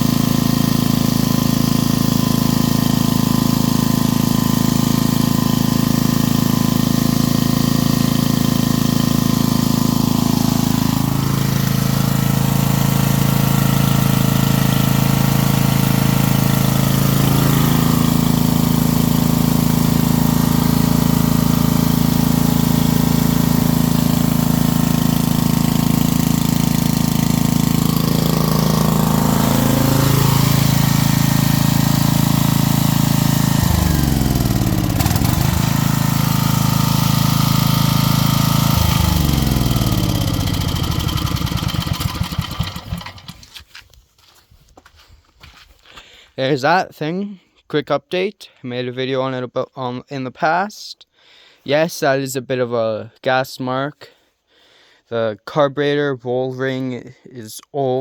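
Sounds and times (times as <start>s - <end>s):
generator engine running: 0.0s - 43.6s.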